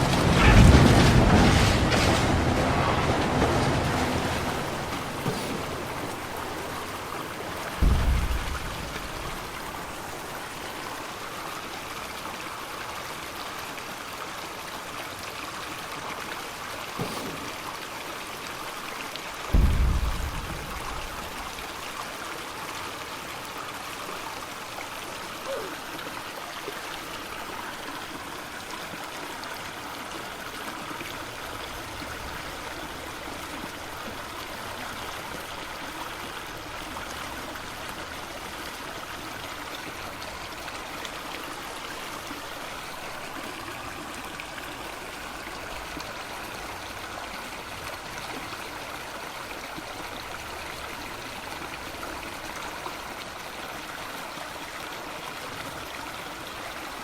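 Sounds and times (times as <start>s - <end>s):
trickling water: 0.0s - 57.0s.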